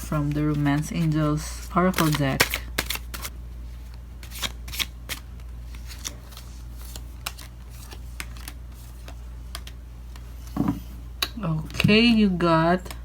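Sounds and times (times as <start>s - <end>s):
cards shuffling: 0.1s - 10.3s.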